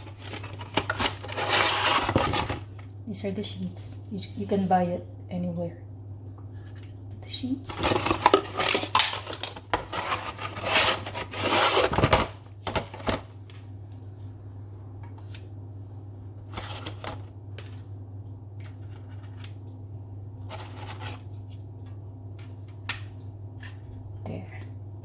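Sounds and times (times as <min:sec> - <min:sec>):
pasta packet crinkling: 0:00.0 - 0:02.9, 0:07.8 - 0:12.1.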